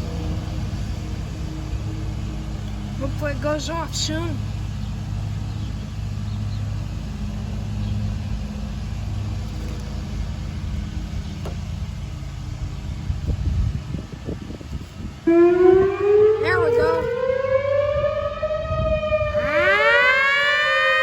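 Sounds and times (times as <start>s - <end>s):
lawnmower engine running: 0.0s - 17.2s
siren winding up: 15.3s - 21.0s.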